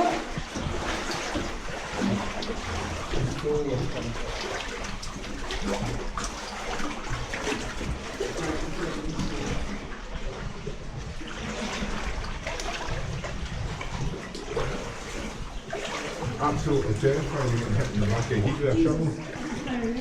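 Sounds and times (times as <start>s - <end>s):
boots splashing through water: 0.0s - 20.0s.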